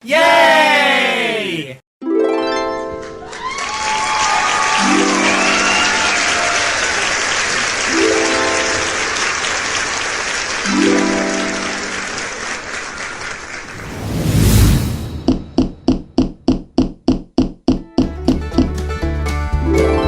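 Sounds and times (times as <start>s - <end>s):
background music with held chords: 18.4s - 20.0s.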